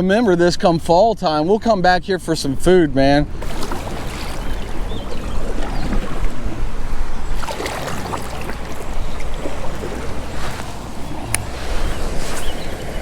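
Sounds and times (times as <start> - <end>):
wind buffeting microphone: 0.0 - 13.0
water moving around kayak: 3.0 - 13.0.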